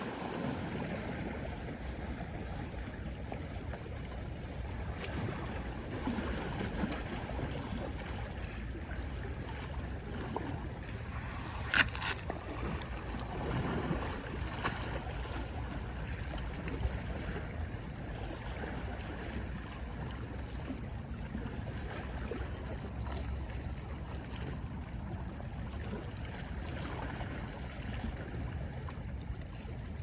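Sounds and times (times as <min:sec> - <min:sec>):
sea water washing against shore: 0:04.8 - 0:17.1.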